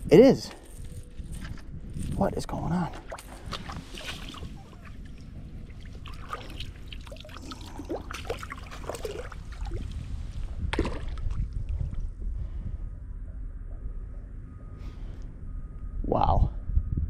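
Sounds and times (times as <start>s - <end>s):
wind rumbling on microphone: 0.0s - 17.0s
water splashing and dripping: 2.9s - 10.0s.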